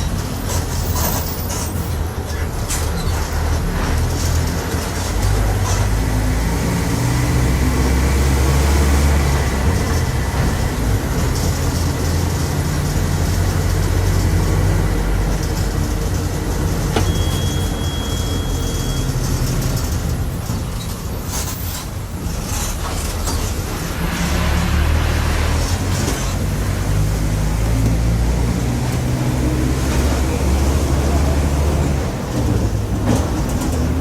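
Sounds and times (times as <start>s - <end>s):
bus engine drone: 0.0s - 34.0s
short high beep: 17.0s - 19.2s.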